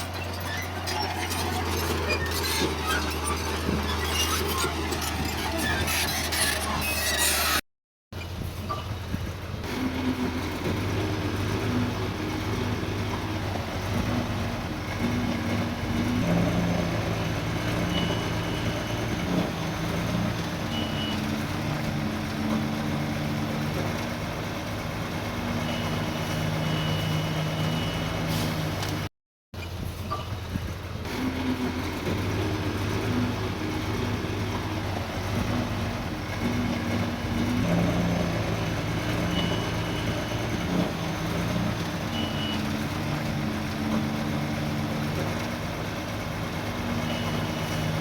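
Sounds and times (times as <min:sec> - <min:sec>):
heavy diesel machinery running: 0:00.0 - 0:07.6, 0:29.6 - 0:48.0.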